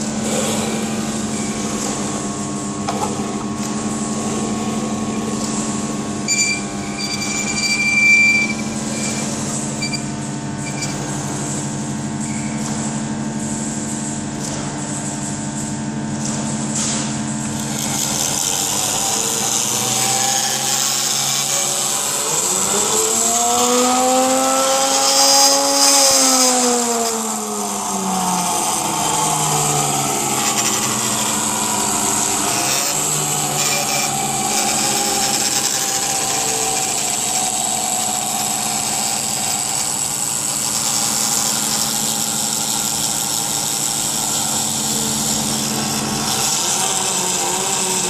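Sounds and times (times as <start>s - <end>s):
high-pitched whine: 0.0s - 48.0s
electric motor humming: 17.4s - 48.0s.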